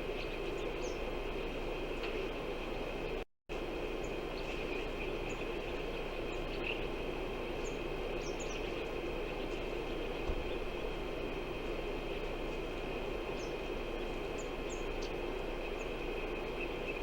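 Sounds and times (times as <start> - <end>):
high insect hum: 0.0 - 17.0
wind noise: 0.0 - 17.0
soft thump: 10.2 - 10.6.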